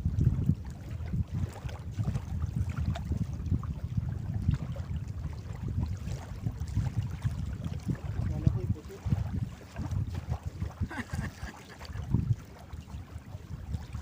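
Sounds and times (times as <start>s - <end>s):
water around boat: 0.0s - 14.0s
wind buffeting microphone: 0.0s - 14.0s.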